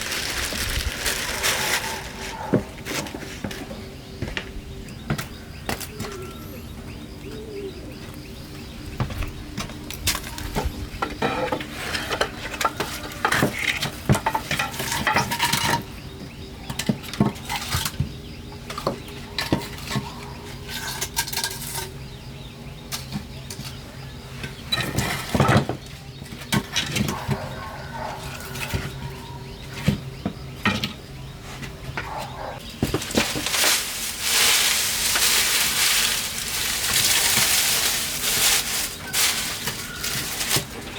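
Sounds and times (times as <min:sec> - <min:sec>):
dishes and utensils clattering: 0:09.6 - 0:16.0, 0:18.7 - 0:22.0, 0:24.4 - 0:30.0.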